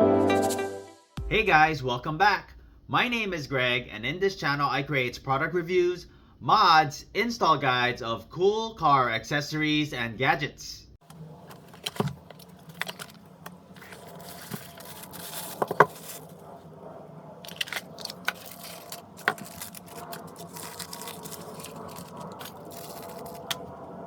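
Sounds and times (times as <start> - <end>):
objects being handled: 11.0 - 16.6, 17.4 - 23.9.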